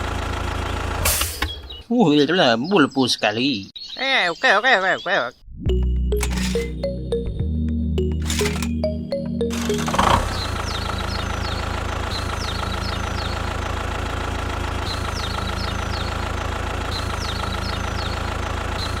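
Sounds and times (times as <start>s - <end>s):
small engine idling: 0.0s - 1.0s, 6.2s - 6.8s, 8.2s - 8.8s, 9.5s - 19.0s.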